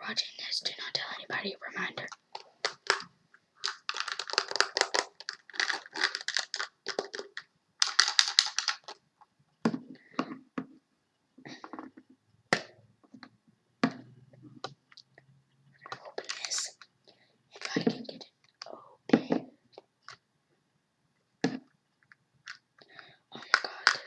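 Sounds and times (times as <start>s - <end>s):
packaging crackling: 2.1s - 9.0s, 16.0s - 16.8s, 23.4s - 24.0s.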